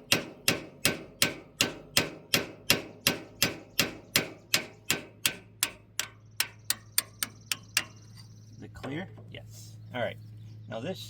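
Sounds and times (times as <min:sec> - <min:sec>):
hammer striking steel punch: 0:00.0 - 0:08.0.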